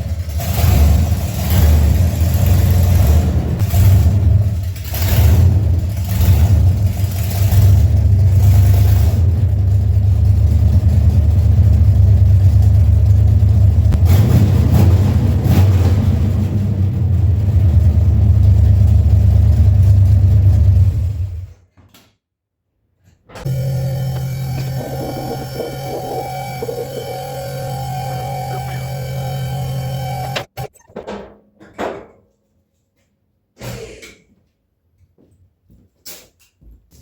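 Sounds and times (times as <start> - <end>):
car engine rumbling: 0.0 - 21.5, 23.4 - 30.7.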